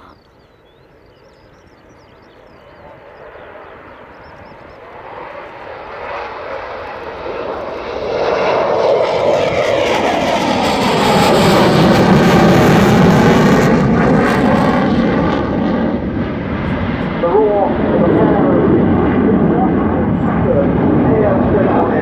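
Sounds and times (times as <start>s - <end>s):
jet engines roaring: 2.4s - 22.0s.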